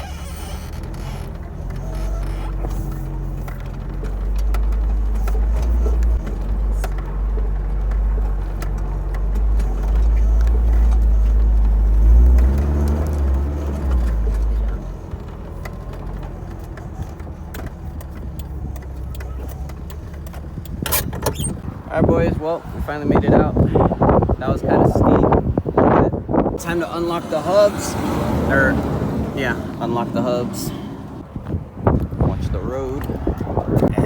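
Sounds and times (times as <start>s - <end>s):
light knocks and rattles: 0.0s - 21.6s
engine pulling hard uphill: 0.0s - 34.0s.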